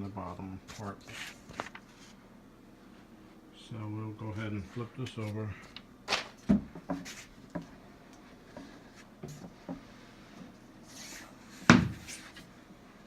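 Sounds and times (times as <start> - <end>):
wooden cabinet knocks and clunks: 11.7 - 12.0.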